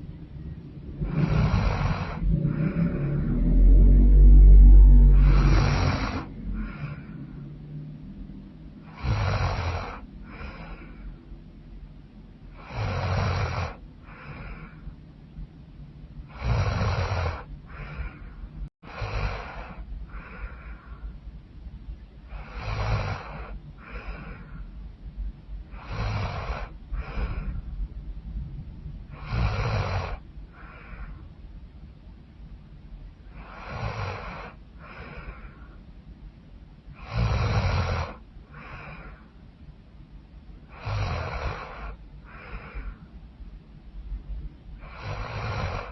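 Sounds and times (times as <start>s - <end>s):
woman snoring loudly: 1.0s - 7.2s, 8.8s - 10.8s, 12.6s - 14.7s, 16.3s - 18.1s, 18.9s - 20.4s, 22.3s - 23.6s, 25.8s - 27.3s, 29.2s - 30.8s, 33.4s - 35.4s, 37.0s - 39.1s, 40.7s - 42.8s, 44.8s - 45.9s.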